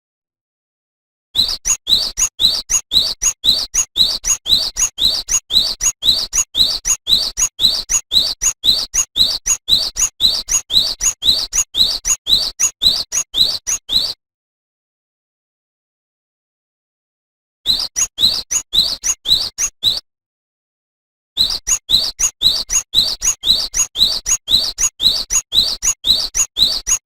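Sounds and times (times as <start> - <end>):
bird whistling song: 1.4 - 14.2, 17.7 - 20.0, 21.4 - 27.0.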